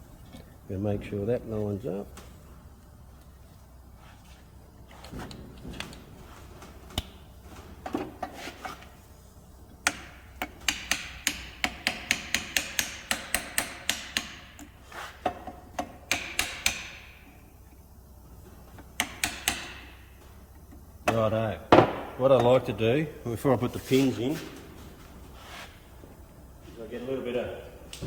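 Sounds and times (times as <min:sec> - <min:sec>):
hammer tapping on steel: 0:09.8 - 0:17.2, 0:19.0 - 0:20.0.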